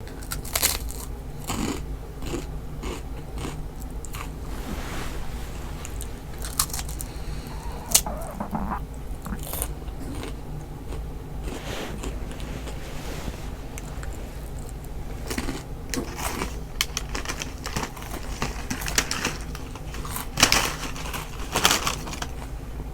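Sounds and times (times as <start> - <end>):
stomach growling and gurgling: 6.5 - 10.4
small clicks and crackles: 14.7 - 22.5.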